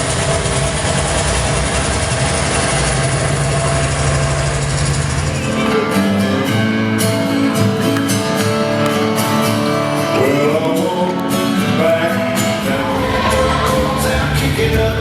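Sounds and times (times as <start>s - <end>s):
pop song with guitar and singing: 5.6s - 15.0s.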